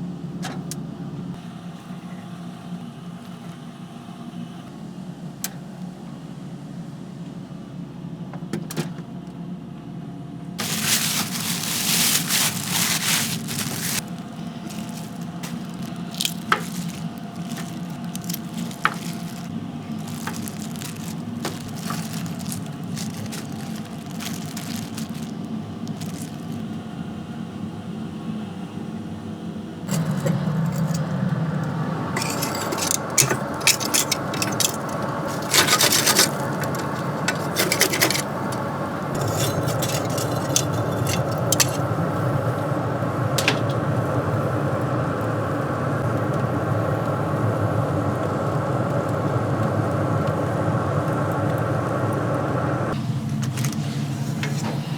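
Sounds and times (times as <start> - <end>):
scraping and rubbing: 10.6 - 26.7, 32.2 - 42.0.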